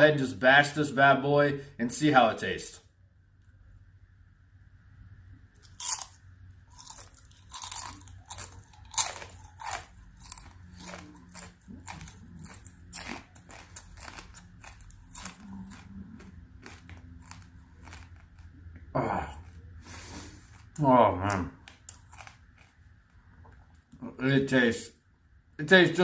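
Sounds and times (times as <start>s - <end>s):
chewing with sharp crunches: 5.6s - 23.7s.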